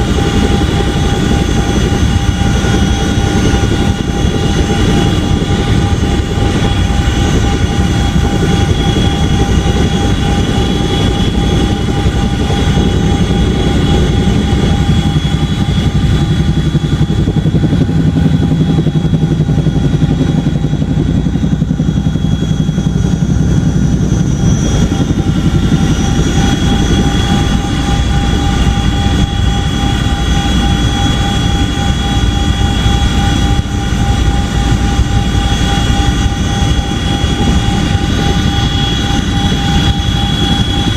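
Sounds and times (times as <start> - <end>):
helicopter engine whine: 0.0 - 40.9
helicopter rotors beating: 0.0 - 40.9.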